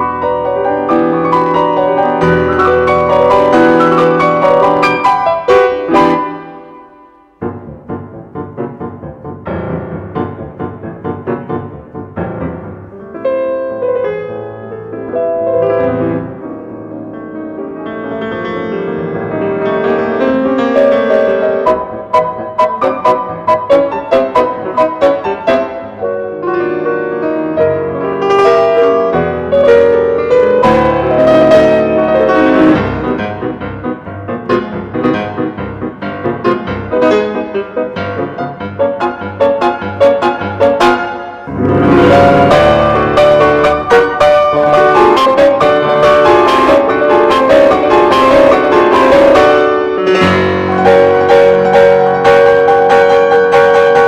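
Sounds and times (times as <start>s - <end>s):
piano music: 0.0s - 54.0s.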